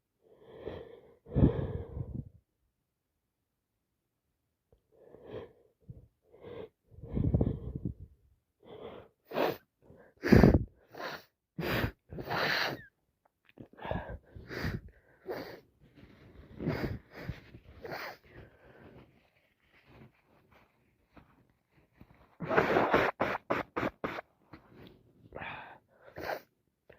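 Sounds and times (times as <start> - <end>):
gasping breaths: 5.0 - 12.9, 13.6 - 19.4.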